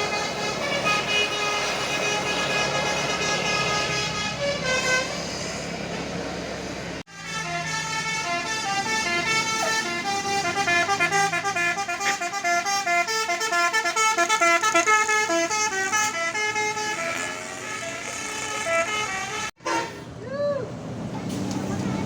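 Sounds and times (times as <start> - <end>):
bus musical horn melody: 0.0 - 6.0, 7.0 - 20.0.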